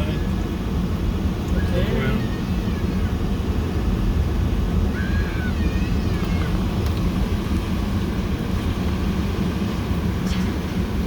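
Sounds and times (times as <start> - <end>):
low background rumble: 0.0 - 11.0
faint high gliding tone: 10.2 - 10.9.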